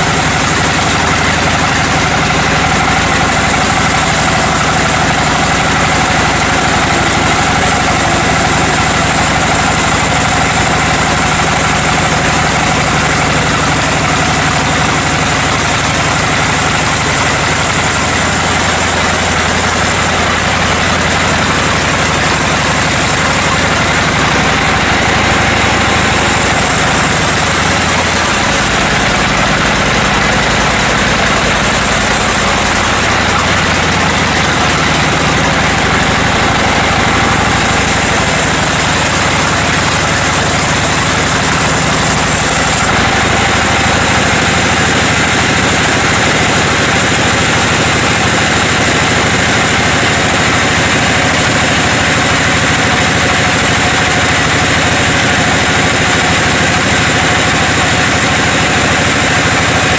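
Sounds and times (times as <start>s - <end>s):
sawmill machinery engine noise: 0.0s - 59.9s.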